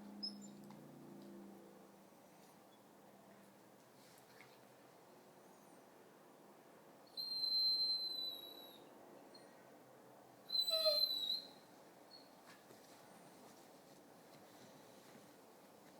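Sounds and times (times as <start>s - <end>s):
dog whining: 7.2s - 8.8s, 10.5s - 12.3s.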